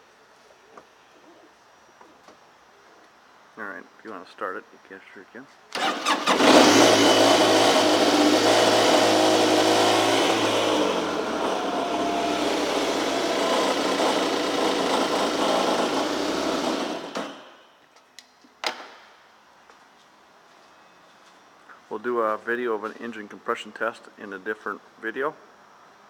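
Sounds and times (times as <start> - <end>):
jet ski engine idling: 6.3 - 17.4.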